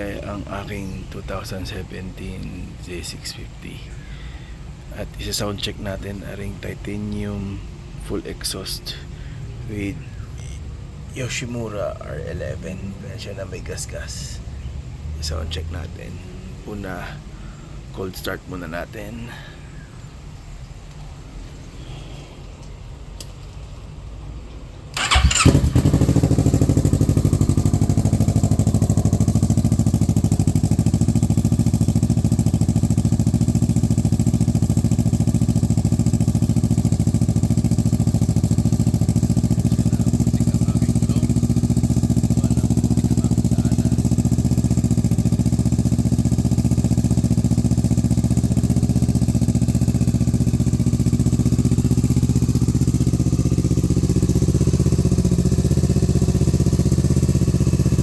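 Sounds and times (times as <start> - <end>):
motorcycle engine idling: 25.0 - 58.0.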